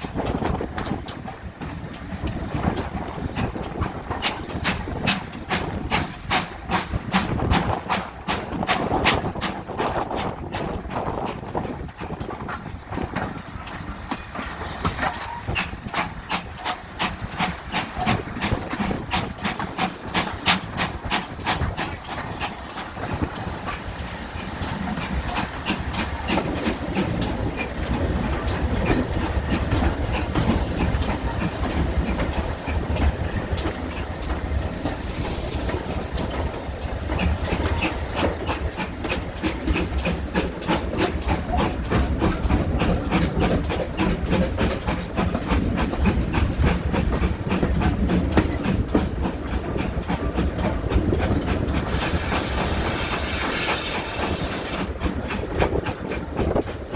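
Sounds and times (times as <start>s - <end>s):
low train rumble: 0.0s - 56.9s
steam train clicking past: 0.0s - 56.9s
steam hissing: 13.4s - 41.8s, 50.7s - 55.1s.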